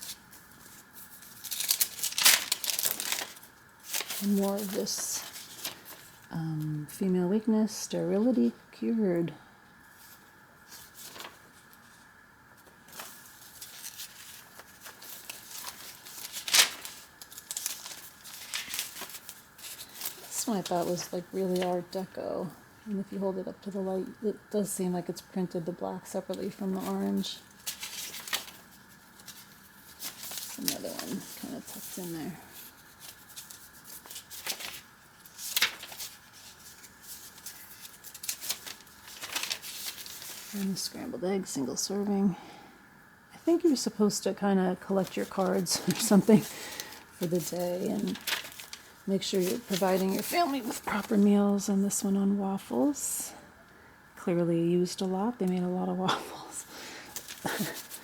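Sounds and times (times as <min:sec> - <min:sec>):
loud paper crackle: 0:00.0 - 0:06.3, 0:10.1 - 0:12.0, 0:12.6 - 0:22.0, 0:26.2 - 0:40.9, 0:45.0 - 0:51.4, 0:57.0 - 0:58.0
paper pages rustling: 0:00.0 - 0:06.3, 0:09.9 - 0:22.2, 0:26.1 - 0:41.0, 0:44.8 - 0:51.6, 0:57.0 - 0:58.0.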